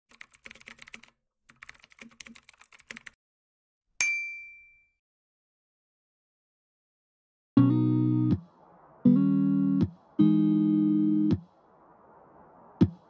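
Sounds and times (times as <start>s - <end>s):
rapid key clicks: 0.1s - 3.2s
bright bell ding: 4.0s - 5.0s.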